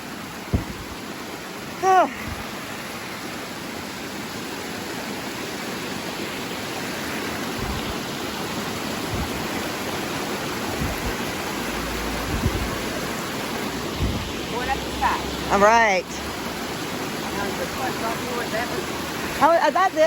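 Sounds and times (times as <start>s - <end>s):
waterfall rushing over rocks: 0.0s - 20.0s
low thumps: 0.5s - 1.0s, 7.6s - 8.0s, 9.1s - 9.6s, 10.8s - 11.2s, 12.2s - 12.8s, 13.8s - 14.4s.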